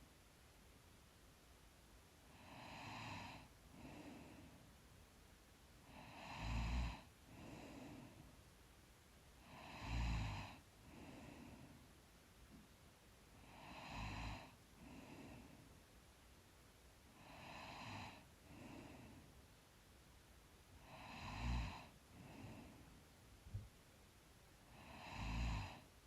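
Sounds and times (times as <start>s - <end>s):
woman snoring lightly: 2.3s - 4.6s, 5.9s - 8.2s, 9.4s - 11.8s, 13.4s - 15.6s, 17.1s - 19.3s, 20.8s - 22.9s, 24.7s - 25.9s.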